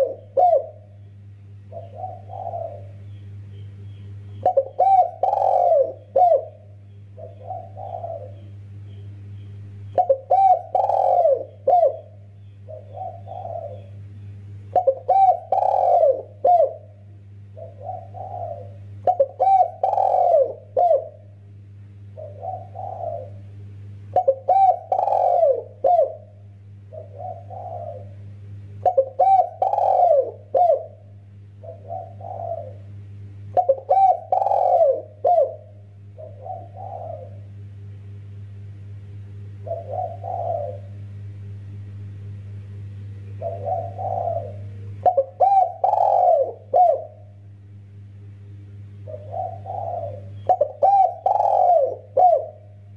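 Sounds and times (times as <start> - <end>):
dove cooing: 0.0 - 1.0, 1.6 - 3.2, 4.3 - 8.6, 9.9 - 14.0, 14.7 - 21.4, 22.1 - 23.5, 24.1 - 37.6, 39.5 - 41.1, 43.3 - 47.4, 49.0 - 52.9
low hum: 0.0 - 52.9.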